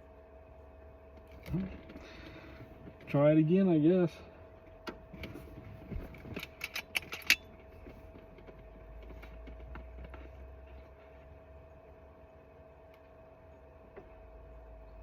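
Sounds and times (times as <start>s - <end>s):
faint steady hum: 0.0s - 15.0s
air rifle action clicks: 6.4s - 7.4s.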